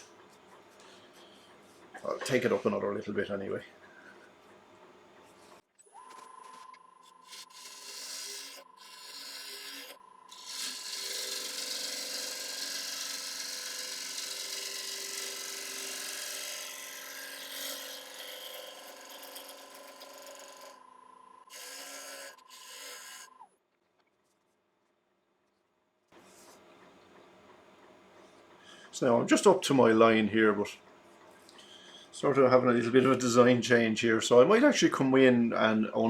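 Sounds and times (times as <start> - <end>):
turning tool cutting wood: 7.2 - 20.8, 21.4 - 23.4
wood lathe whining: 7.2 - 20.8, 21.4 - 23.4.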